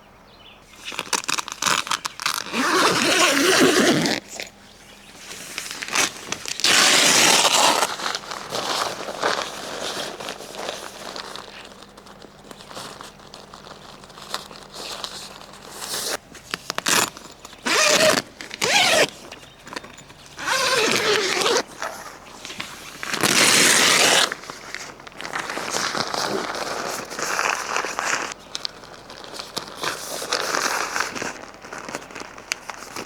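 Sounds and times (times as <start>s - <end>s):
rustling: 0.7s - 33.0s
zipper rasping: 1.0s - 4.5s, 6.0s - 11.5s, 16.8s - 19.2s, 20.4s - 22.2s, 23.0s - 24.4s.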